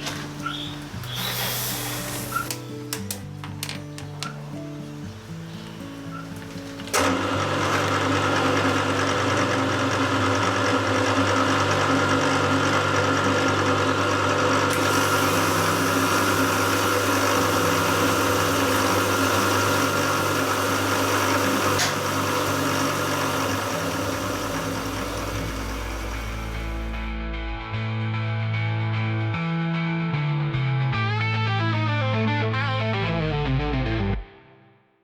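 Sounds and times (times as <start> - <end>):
milling machine whir and grind: 6.9 - 27.0.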